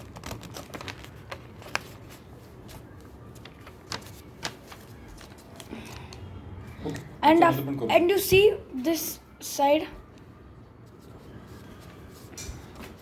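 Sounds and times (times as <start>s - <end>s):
paper being folded and creased: 0.0s - 6.2s.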